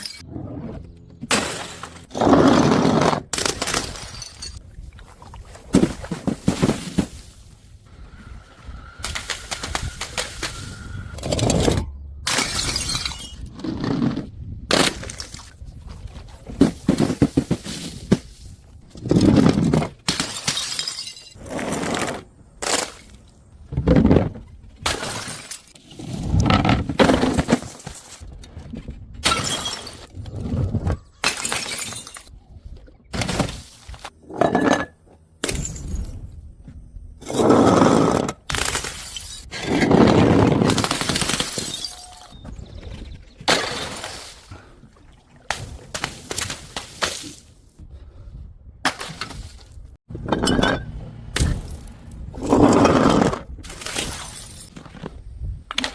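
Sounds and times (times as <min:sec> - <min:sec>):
glass bottles smashing: 0:03.6 - 0:04.6, 0:12.3 - 0:13.4, 0:20.1 - 0:21.4, 0:29.3 - 0:30.1, 0:31.2 - 0:32.3, 0:40.7 - 0:42.4, 0:50.2 - 0:52.0, 0:53.7 - 0:54.7.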